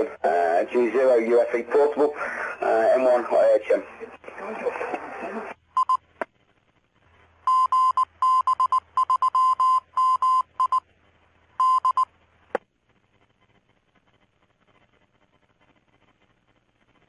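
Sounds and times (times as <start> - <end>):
radio carrier hum: 0.0 - 7.6
morse code tone pulses: 5.8 - 6.0, 7.5 - 10.8, 11.6 - 12.1.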